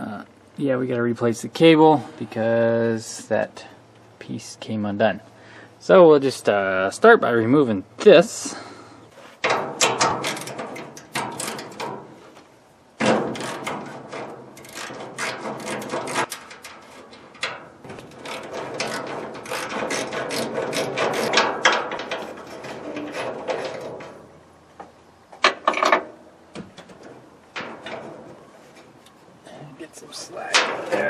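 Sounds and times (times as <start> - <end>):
sharp knocks: 13.0 - 16.3.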